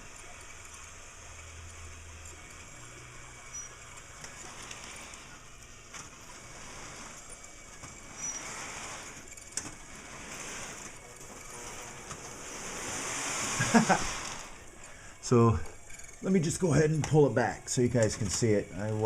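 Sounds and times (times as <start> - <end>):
model train rolling on track: 0.0 - 19.0
sharp track clicks: 15.8 - 19.0.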